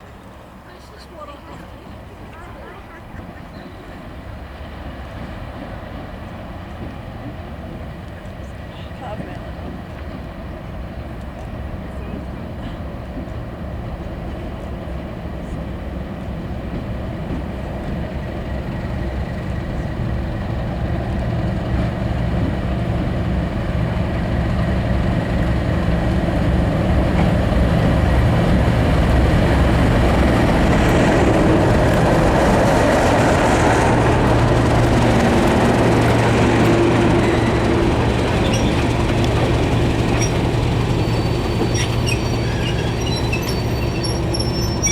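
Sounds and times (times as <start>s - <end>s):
diesel locomotive engine rumble: 0.0s - 44.9s
faint train squeal: 24.6s - 44.9s.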